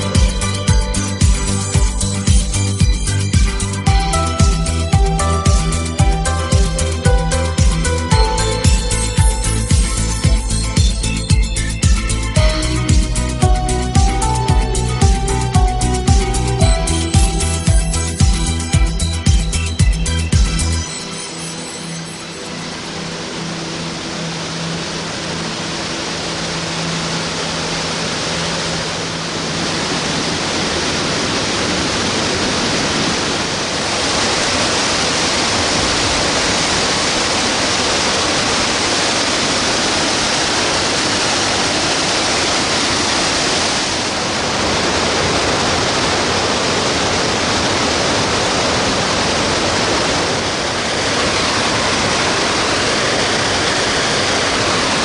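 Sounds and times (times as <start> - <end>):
background music: 0.0 - 30.6
waterfall rushing: 0.0 - 55.0.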